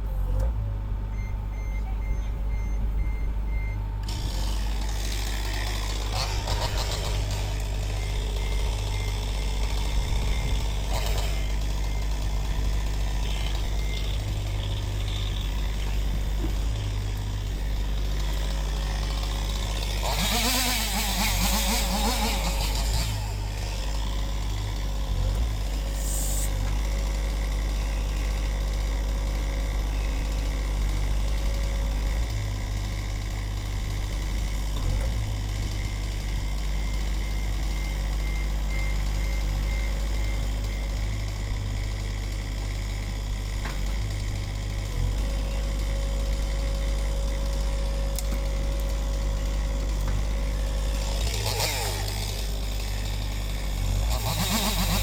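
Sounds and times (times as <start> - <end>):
diesel engine running: 0.0 - 55.0
reversing alarm beeping: 1.1 - 3.9, 6.1 - 14.6, 35.6 - 42.0.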